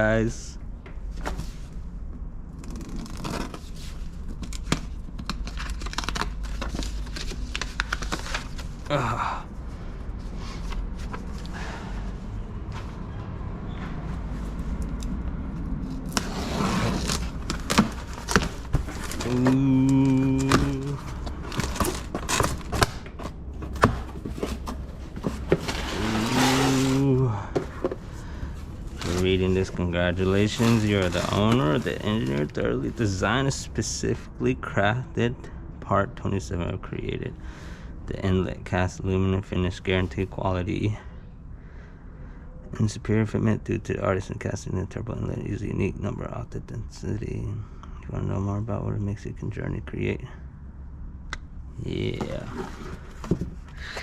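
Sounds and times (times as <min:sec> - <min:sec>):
low steady hum: 0:00.0 - 0:54.0
packaging clicks and rustles: 0:04.2 - 0:08.9, 0:16.0 - 0:32.6
packaging being torn and crinkled: 0:04.3 - 0:08.9.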